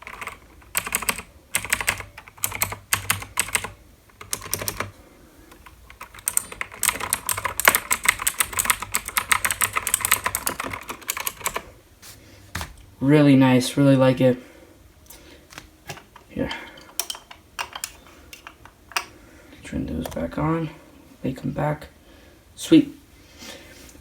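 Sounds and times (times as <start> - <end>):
mechanical keyboard typing: 0.0 - 5.0, 5.6 - 11.7.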